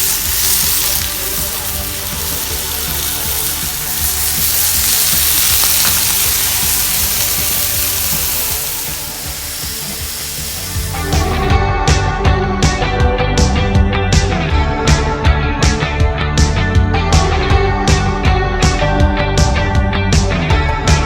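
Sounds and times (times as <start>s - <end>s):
meat sizzling on a barbecue: 0.0s - 11.5s
background music: 0.0s - 21.0s
rock music with guitar: 0.0s - 21.0s.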